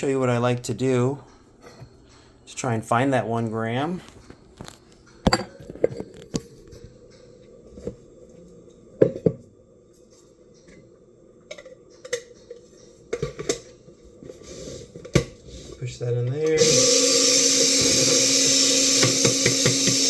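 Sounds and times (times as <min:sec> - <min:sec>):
plastic grinder knocking: 0:16.6 - 0:20.0.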